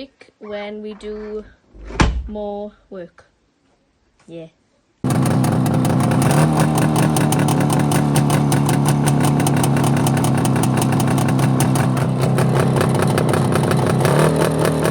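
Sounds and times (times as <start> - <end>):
car engine running: 5.1 - 14.9.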